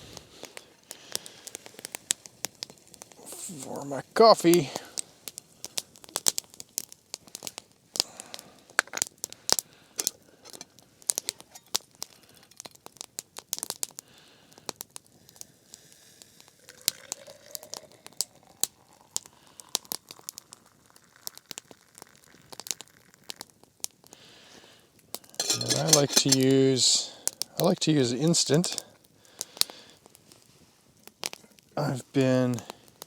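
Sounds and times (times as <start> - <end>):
campfire crackling and popping: 0.0 - 33.0.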